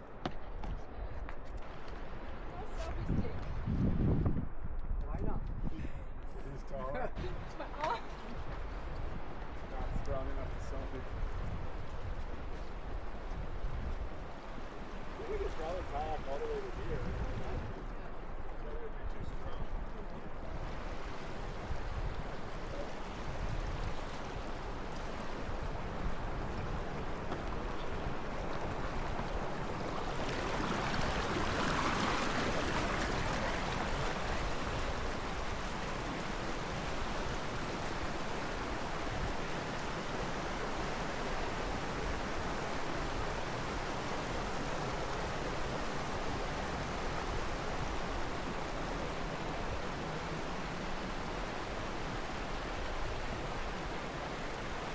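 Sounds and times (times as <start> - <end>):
river water rushing: 20.3 - 54.9.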